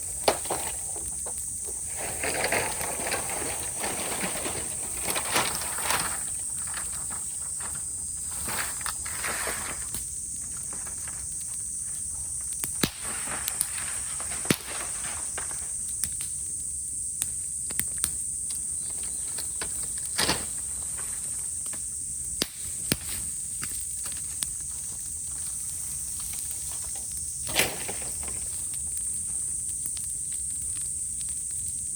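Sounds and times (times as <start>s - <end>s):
bamboo crackling in a fire: 0.0s - 31.9s
cicadas buzzing: 0.0s - 31.9s.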